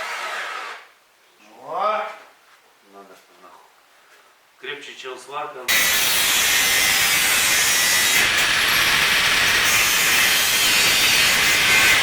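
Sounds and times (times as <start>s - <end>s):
angle grinder on metal: 5.7s - 12.0s.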